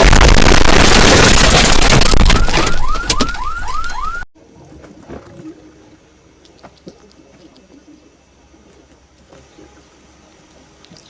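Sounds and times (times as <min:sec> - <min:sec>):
distorted noise blast: 0:00.0 - 0:03.0.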